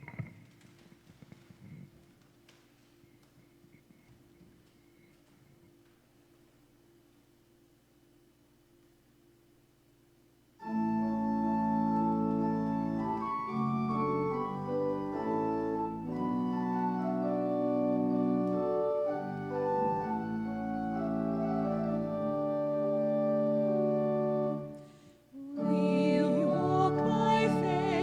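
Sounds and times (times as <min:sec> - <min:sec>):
church organ chords: 0:10.6 - 0:28.0.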